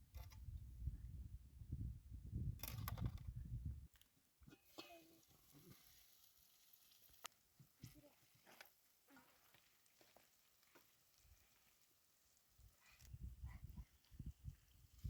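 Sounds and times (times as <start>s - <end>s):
food sizzling with crackles: 4.6s - 15.0s.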